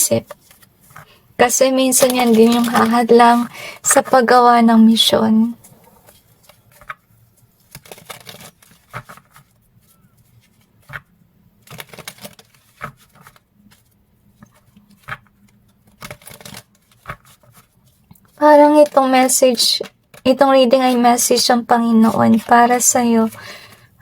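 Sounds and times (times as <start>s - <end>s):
cards shuffled and set down: 0.3s - 1.1s, 2.0s - 3.0s, 6.0s - 7.0s, 7.6s - 9.6s, 10.2s - 13.8s, 14.4s - 18.4s.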